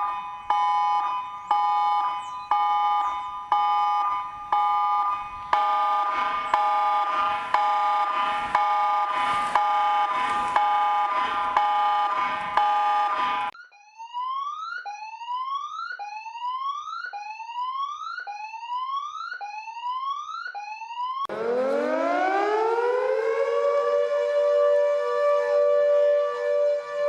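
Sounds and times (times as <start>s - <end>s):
electronic alarm whoop sweep: 0.0s - 13.6s, 21.2s - 27.0s
civil defence siren: 0.0s - 27.0s
pulsing electronic alarm tone: 0.0s - 27.0s.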